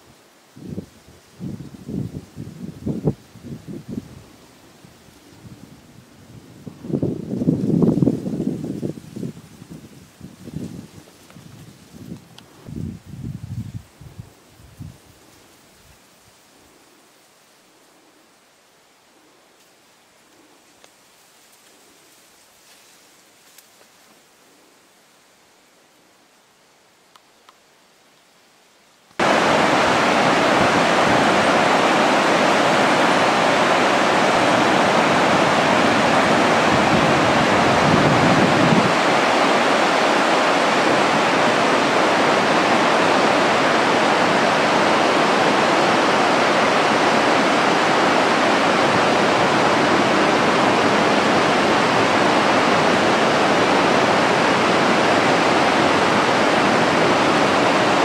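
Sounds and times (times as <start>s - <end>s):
waterfall rushing: 29.2s - 58.0s.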